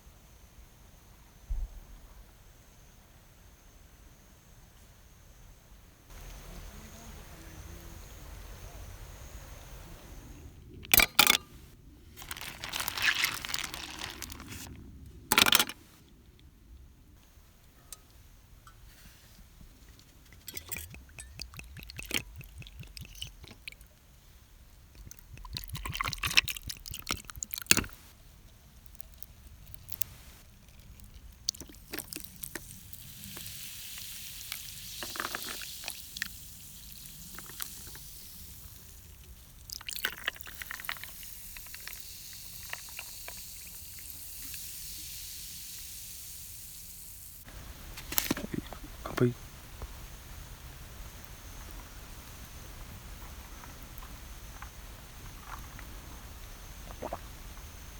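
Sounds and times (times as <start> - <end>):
containers and utensils clicking: 10.8 - 11.4, 15.3 - 15.8, 20.3 - 23.8, 25.0 - 28.0
liquid pouring: 20.4 - 23.8, 25.0 - 28.0, 30.6 - 38.1, 39.6 - 44.1.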